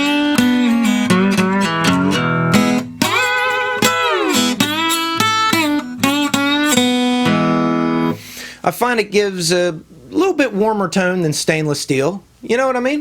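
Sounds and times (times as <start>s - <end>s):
slide acoustic guitar: 0.0s - 8.4s.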